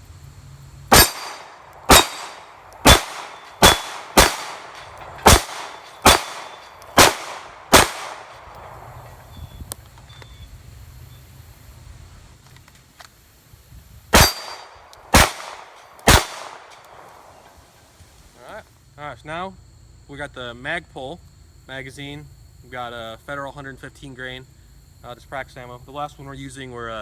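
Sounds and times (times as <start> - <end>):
pistol shots with ringing echo: 0.9 - 9.0, 14.2 - 17.4.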